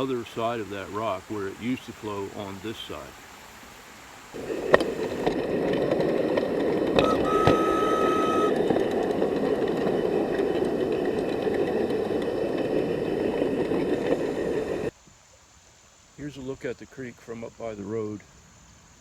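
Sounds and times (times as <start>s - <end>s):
water rushing over rocks: 0.0s - 14.9s
high steady whistle: 7.0s - 8.7s.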